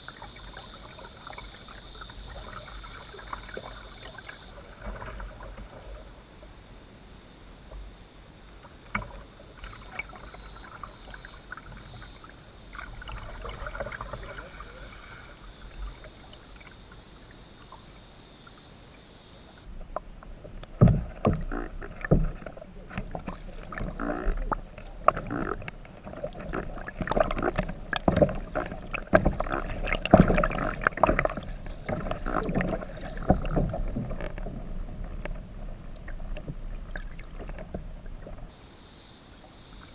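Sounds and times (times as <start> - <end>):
paddle splashing and dripping: 0.0 - 6.4, 8.5 - 19.7, 20.3 - 39.9
cicada drone: 0.0 - 19.7, 21.2 - 22.6, 23.2 - 34.4, 38.5 - 39.9
paddle knocks: 20.7 - 21.5.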